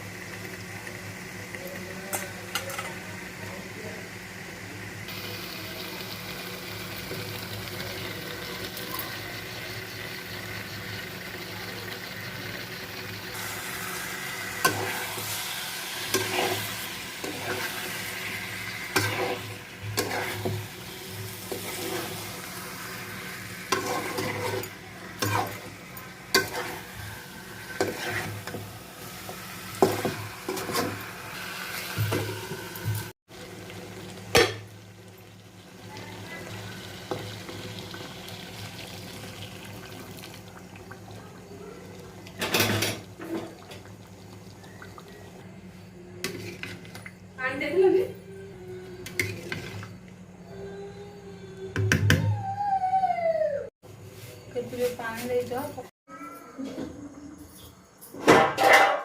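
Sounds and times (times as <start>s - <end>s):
masala sizzling in a pan: 0.0s - 48.1s, 53.9s - 55.9s
utensil scraping a pan: 13.4s - 20.7s, 21.3s - 22.6s, 23.6s - 25.7s, 26.3s - 28.6s, 29.7s - 32.5s, 46.2s - 47.0s.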